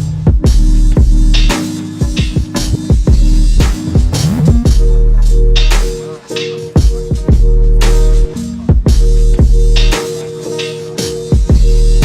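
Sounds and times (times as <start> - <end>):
electronic dubstep music: 2.5 - 6.0.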